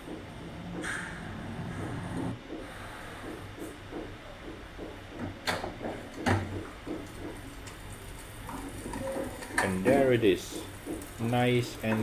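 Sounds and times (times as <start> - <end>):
air fryer humming: 4.2 - 12.0.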